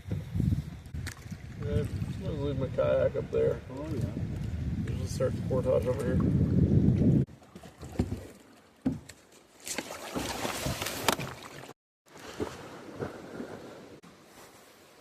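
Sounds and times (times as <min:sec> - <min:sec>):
knocks and scrapes on kayak hull: 0:03.8 - 0:11.5
scraping and splashing: 0:07.3 - 0:13.8.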